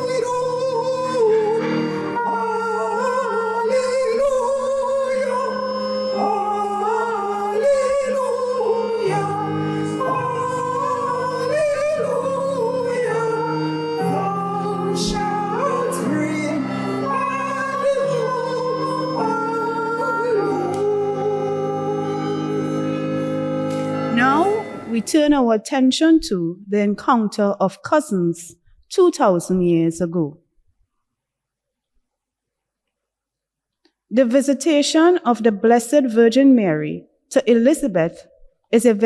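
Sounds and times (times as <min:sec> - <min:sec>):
held accompaniment chords: 0:00.0 - 0:25.7
person singing with vibrato: 0:00.0 - 0:25.7.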